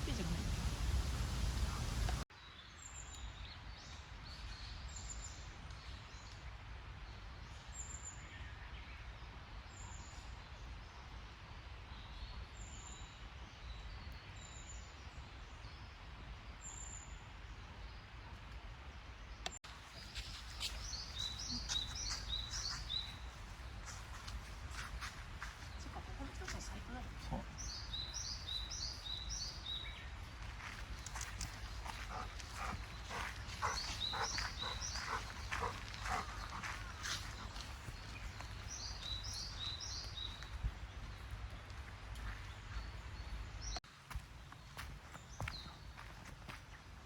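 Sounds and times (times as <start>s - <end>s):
birds chirping: 0.0s - 2.2s, 19.4s - 43.8s, 44.4s - 46.8s.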